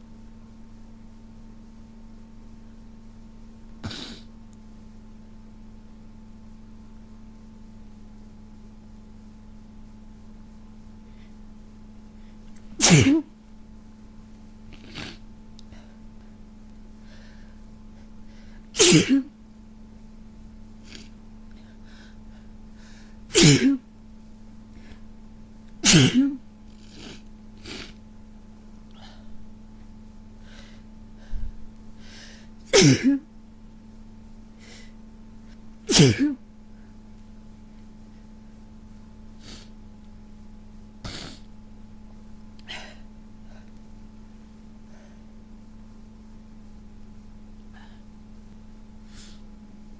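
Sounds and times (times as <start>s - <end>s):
steady low hum: 0.0s - 49.9s
person sneezing: 3.8s - 4.3s, 12.7s - 13.3s, 14.7s - 15.2s, 18.8s - 19.3s, 23.3s - 23.8s, 25.8s - 28.0s, 32.7s - 33.2s, 35.9s - 36.4s, 41.0s - 41.5s.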